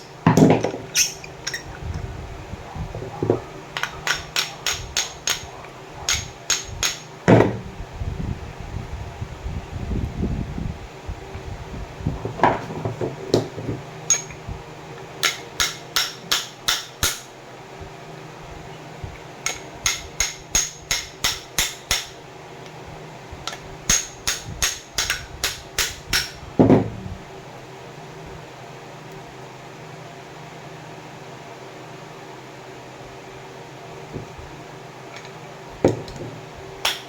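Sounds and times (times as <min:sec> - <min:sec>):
sharp metallic tapping: 0:03.8 - 0:05.5, 0:06.1 - 0:07.1, 0:15.2 - 0:17.3
knocks: 0:06.1 - 0:07.6, 0:26.6 - 0:27.0.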